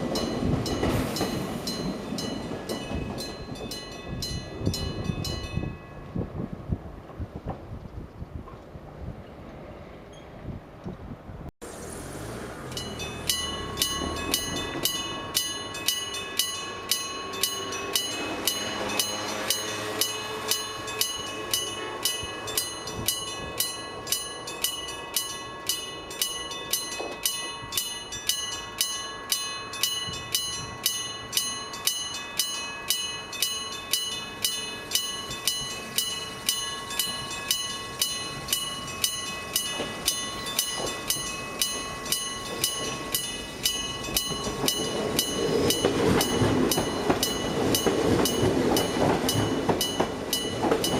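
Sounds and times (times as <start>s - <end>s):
electric train passing: 0.0s - 7.7s, 8.4s - 50.9s
level crossing bell ringing: 12.7s - 50.9s.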